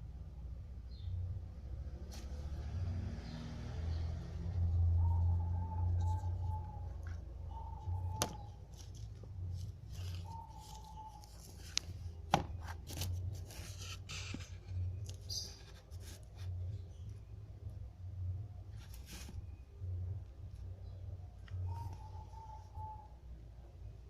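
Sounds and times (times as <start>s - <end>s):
rubbing and rustling handling: 5.8s - 16.9s, 18.7s - 19.7s.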